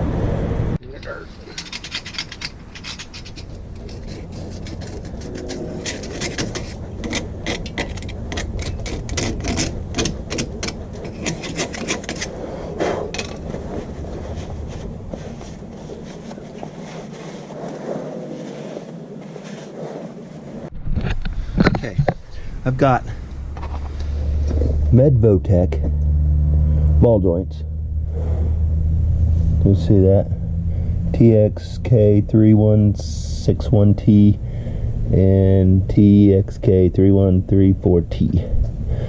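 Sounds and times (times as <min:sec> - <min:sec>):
low rumble: 0:00.0 - 0:01.6, 0:02.4 - 0:39.0
metal tools clinking and scraping: 0:01.0 - 0:12.4, 0:13.0 - 0:13.9.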